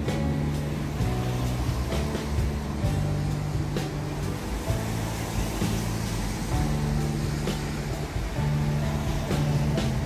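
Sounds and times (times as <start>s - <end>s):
music with slow held notes: 0.0s - 10.0s.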